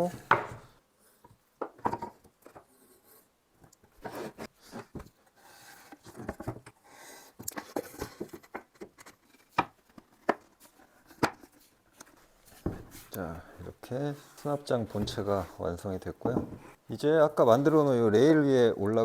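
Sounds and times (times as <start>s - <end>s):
wood scraping on wood: 3.9s - 9.6s.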